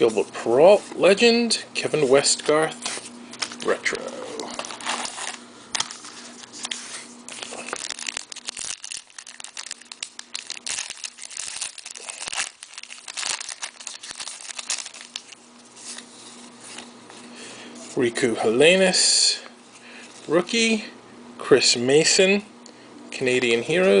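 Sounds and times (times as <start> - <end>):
card pack wrappers crinkling: 2.2 - 17.0
cards rustling: 2.2 - 18.0.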